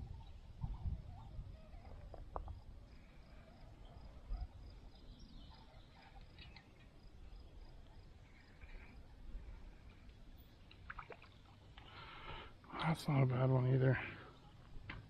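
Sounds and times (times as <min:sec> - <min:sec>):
wind rumble on microphone: 0:00.0 - 0:03.0
high insect-like chirp: 0:00.0 - 0:09.2
bird chirps: 0:03.3 - 0:08.8.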